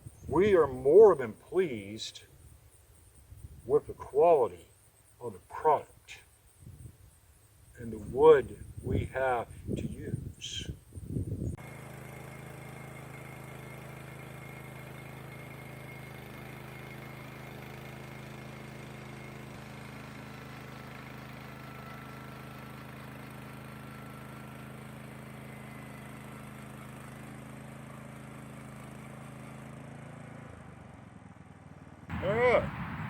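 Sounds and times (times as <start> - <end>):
sawmill engine humming: 0.2 - 2.2, 11.6 - 33.0.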